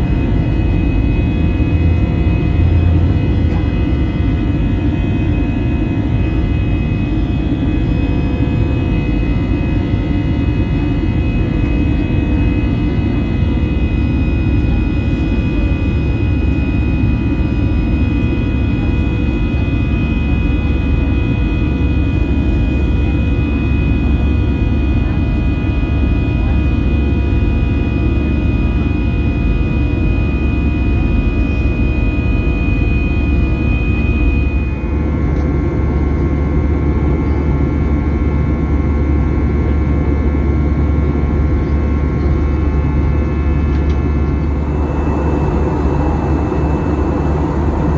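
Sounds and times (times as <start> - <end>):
aircraft engine and airflow rumble: 0.0 - 47.9
high whine: 42.7 - 47.9.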